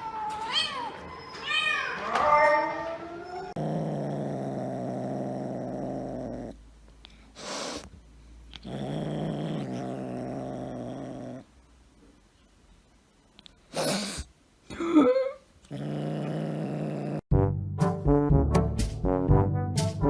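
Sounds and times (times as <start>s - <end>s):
cat growling: 3.5s - 6.6s, 8.5s - 11.5s, 15.6s - 17.3s
cat hissing: 7.3s - 7.9s, 13.7s - 14.3s.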